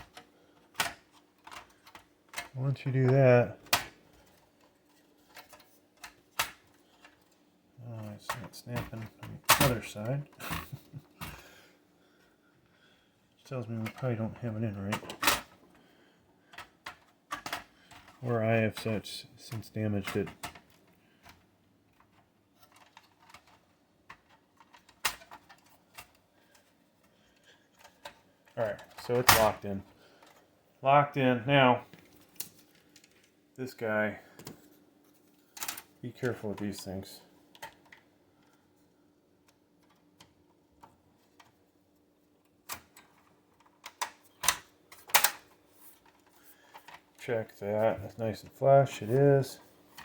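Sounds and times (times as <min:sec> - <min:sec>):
computer case parts clicking: 0:00.0 - 0:02.6, 0:42.6 - 0:47.1.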